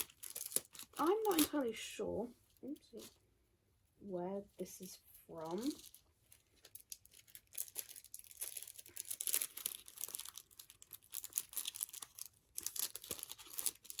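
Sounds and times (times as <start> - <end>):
packaging crinkling: 0.0 - 1.7, 5.4 - 14.0.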